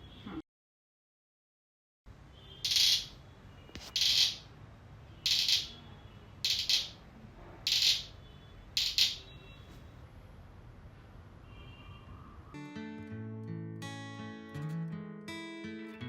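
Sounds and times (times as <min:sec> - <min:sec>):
clicking toy bursts: 0:02.6 - 0:03.2, 0:03.8 - 0:04.5, 0:05.2 - 0:05.8, 0:06.4 - 0:07.0, 0:07.7 - 0:08.2, 0:08.8 - 0:09.3.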